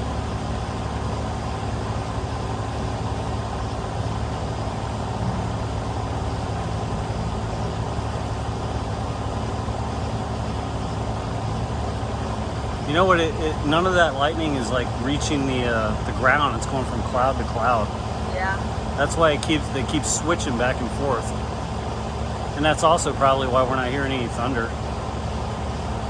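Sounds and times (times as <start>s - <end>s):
engine idling hum and hiss: 0.0s - 26.0s.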